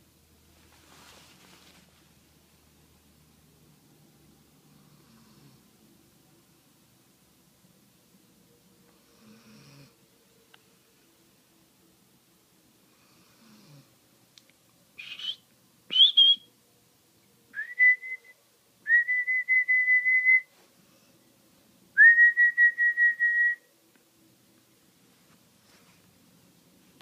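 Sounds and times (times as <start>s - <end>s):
dog whistling and squeaking: 15.0s - 16.5s.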